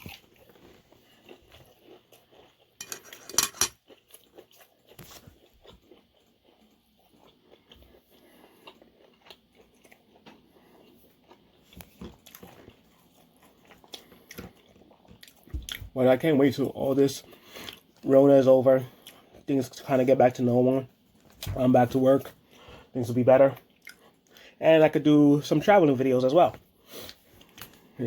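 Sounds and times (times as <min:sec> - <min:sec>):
person chewing crunchy food: 0:00.0 - 0:16.0, 0:16.7 - 0:19.9, 0:23.6 - 0:24.6, 0:26.7 - 0:28.0.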